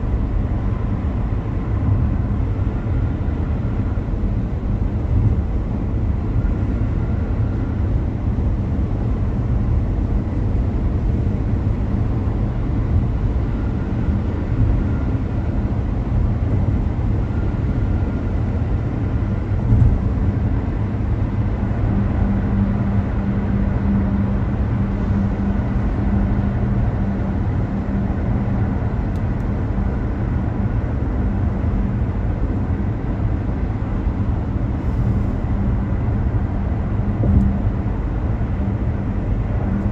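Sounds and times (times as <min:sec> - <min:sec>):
car engine and road noise: 0:00.0 - 0:39.9
humming drone: 0:33.4 - 0:39.9
light thump: 0:37.2 - 0:37.6.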